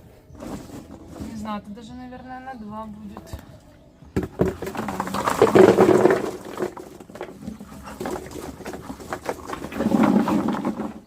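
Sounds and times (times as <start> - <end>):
pine cones clattering from bucket: 0.4 - 1.5, 4.2 - 11.0.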